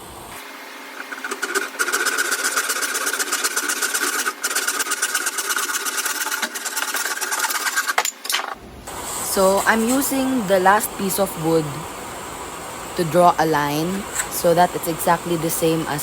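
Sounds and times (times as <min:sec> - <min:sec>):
hand saw cutting wood: 0:01.1 - 0:08.0.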